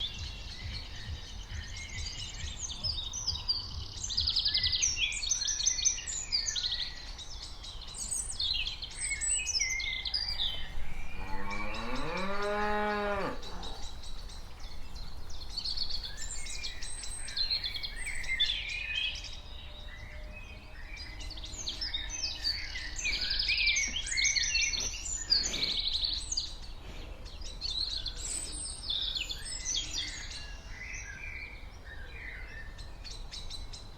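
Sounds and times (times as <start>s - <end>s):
birds chirping and singing: 0.0s - 33.9s
steady low rumble: 10.3s - 12.5s, 13.3s - 18.5s
cow lowing: 10.3s - 18.4s.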